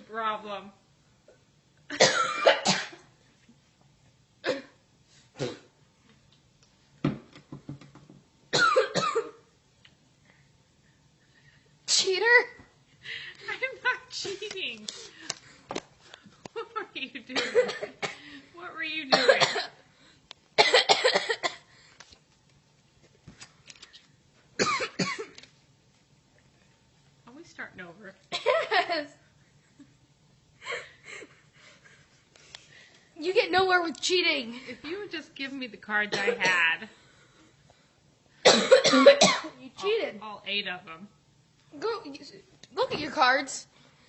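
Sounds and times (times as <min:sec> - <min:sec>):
person coughing: 0:01.9 - 0:03.0, 0:04.4 - 0:04.8, 0:05.4 - 0:05.7, 0:08.6 - 0:09.4, 0:17.3 - 0:18.3, 0:19.1 - 0:19.8, 0:20.6 - 0:21.7, 0:24.6 - 0:25.3, 0:36.1 - 0:36.7, 0:38.4 - 0:39.6.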